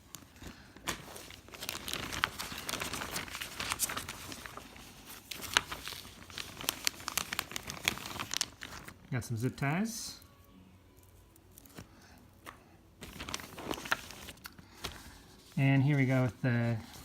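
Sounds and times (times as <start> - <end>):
plastic packaging crinkling: 0.0 - 9.1, 13.0 - 17.0.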